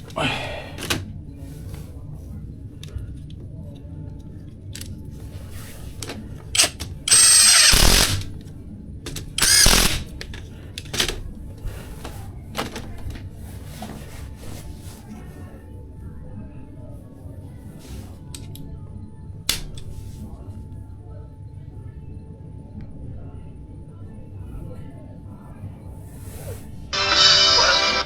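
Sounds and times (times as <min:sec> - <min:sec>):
electric power tool motor: 0:06.6 - 0:08.3, 0:09.4 - 0:10.1.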